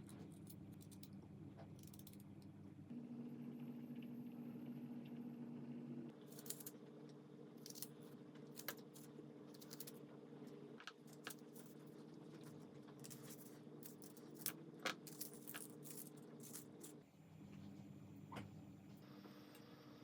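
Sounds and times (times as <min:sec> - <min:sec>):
steady low hum: 0:00.0 - 0:20.0
kitchen utensils clicking and scraping: 0:09.6 - 0:09.9, 0:12.4 - 0:17.0.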